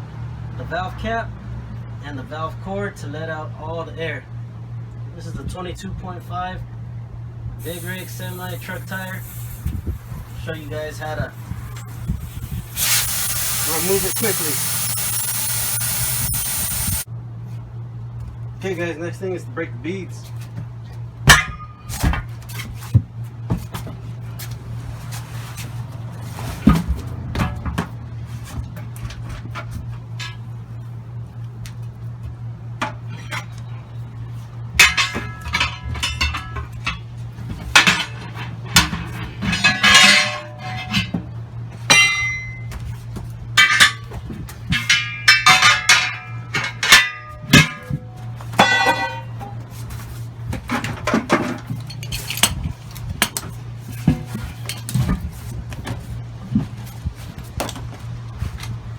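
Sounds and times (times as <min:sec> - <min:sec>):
steady low hum: 0:07.1 - 0:17.8
tire bars clanking on steel rim: 0:07.6 - 0:15.8, 0:34.8 - 0:42.7, 0:43.6 - 0:49.6.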